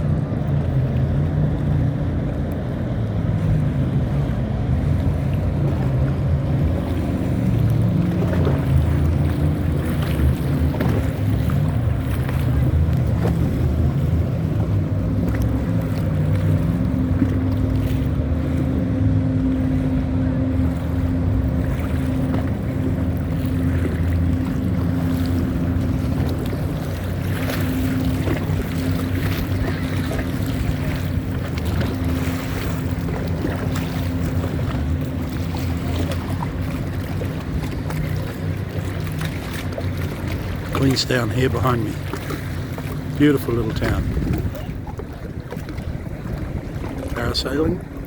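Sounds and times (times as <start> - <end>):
boat engine droning: 0.0 - 48.0
wind noise on microphone: 43.7 - 48.0.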